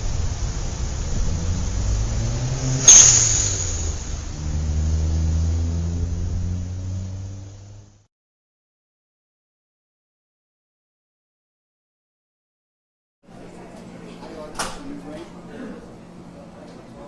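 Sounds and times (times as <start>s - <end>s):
sharp burst of noise: 0.0s - 7.8s
vehicle engine running: 0.0s - 8.1s.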